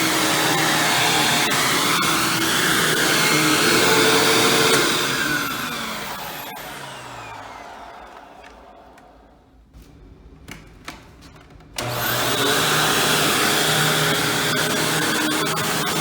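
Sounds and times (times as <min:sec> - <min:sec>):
vacuum cleaner running: 0:00.0 - 0:08.6, 0:11.8 - 0:16.0.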